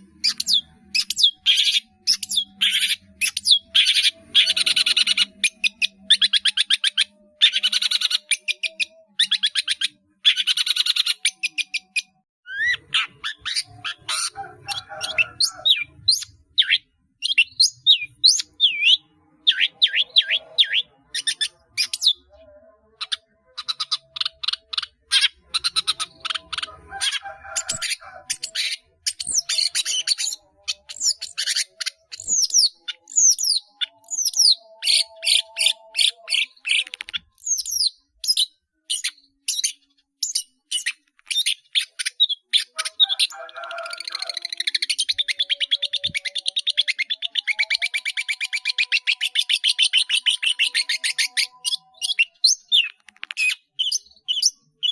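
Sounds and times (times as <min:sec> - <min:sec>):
harsh rasping bird chatter: 0:00.0 - 0:18.9, 0:23.0 - 0:37.9
bird singing varied song: 0:00.0 - 0:54.9.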